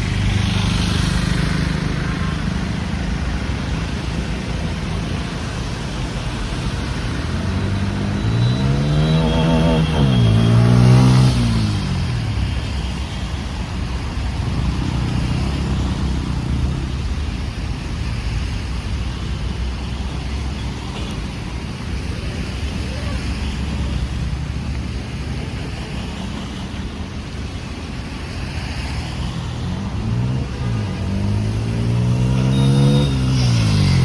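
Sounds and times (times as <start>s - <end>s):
wind and wet road hiss: 0.0s - 8.0s, 11.3s - 32.0s
motorcycle engine revving: 30.2s - 34.0s.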